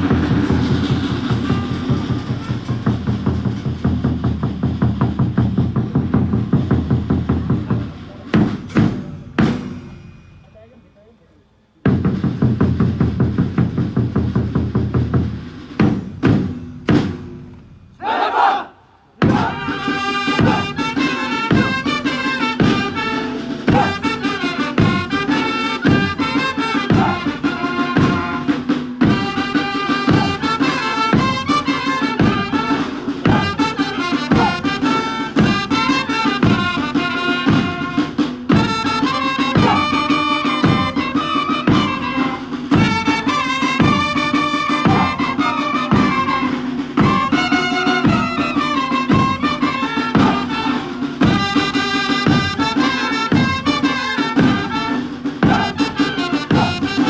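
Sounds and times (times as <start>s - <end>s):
drum hits: 0.0s - 10.3s, 11.8s - 18.0s, 19.2s - 57.0s
person shouting: 19.3s - 19.8s, 26.9s - 27.3s, 34.4s - 34.7s, 39.6s - 40.0s, 50.2s - 50.7s, 56.5s - 57.0s.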